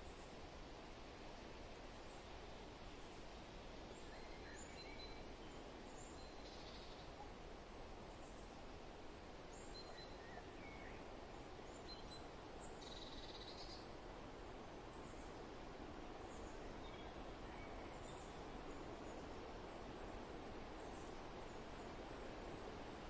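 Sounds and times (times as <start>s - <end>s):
soft wind: 0.0s - 23.0s.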